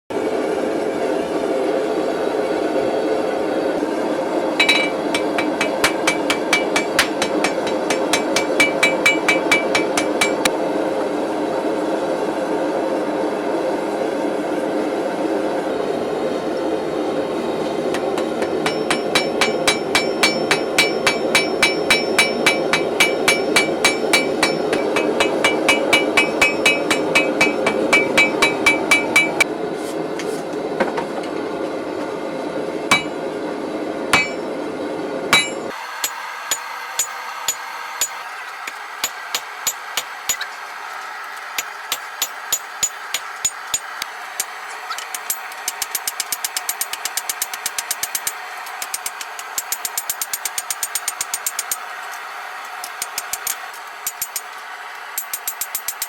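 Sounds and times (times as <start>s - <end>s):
hammer striking steel on anvil: 4.6s - 10.5s, 17.9s - 29.5s, 32.9s - 33.2s, 34.2s - 34.5s, 35.3s - 38.2s, 39.0s - 40.5s, 41.6s - 51.8s, 53.0s - 54.5s, 55.2s - 56.0s.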